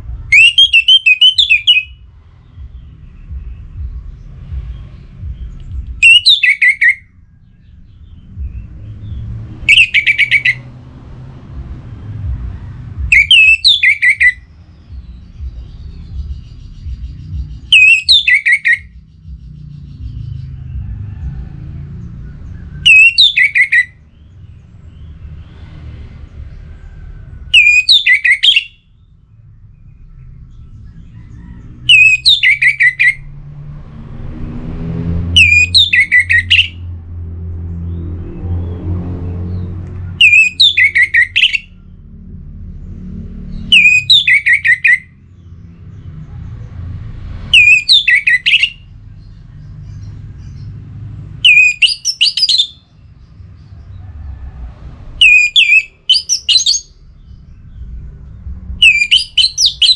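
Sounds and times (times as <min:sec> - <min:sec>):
low steady rumble: 0:00.0 - 0:06.2, 0:07.0 - 0:18.1, 0:18.7 - 0:27.7, 0:28.7 - 0:40.6, 0:56.8 - 0:59.9
bird whistling song: 0:00.0 - 0:10.7, 0:13.0 - 0:20.5, 0:22.6 - 0:25.2, 0:27.5 - 0:29.0, 0:29.8 - 0:33.3, 0:35.3 - 0:36.9, 0:40.2 - 0:41.8, 0:43.5 - 0:45.4, 0:47.5 - 0:48.9, 0:51.4 - 0:53.1, 0:55.2 - 0:57.0, 0:58.8 - 0:59.9.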